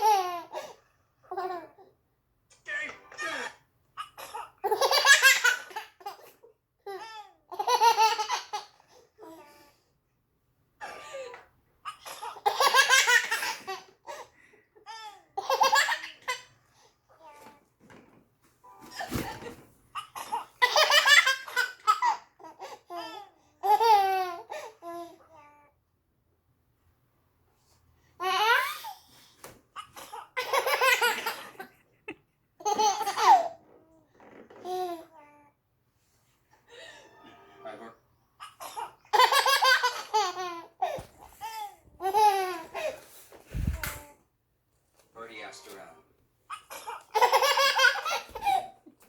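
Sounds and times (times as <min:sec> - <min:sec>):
baby laughing: 0:00.0 - 0:00.7, 0:02.6 - 0:09.4, 0:10.8 - 0:14.3, 0:14.9 - 0:16.5, 0:19.0 - 0:25.0, 0:29.9 - 0:33.6, 0:38.4 - 0:43.0, 0:46.5 - 0:49.0
baby belly-laughing: 0:46.5 - 0:48.8.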